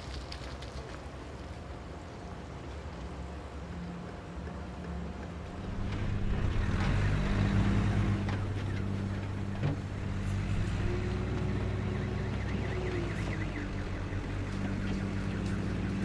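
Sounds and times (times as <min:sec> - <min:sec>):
motor vehicle engine humming: 0:04.8 - 0:16.0.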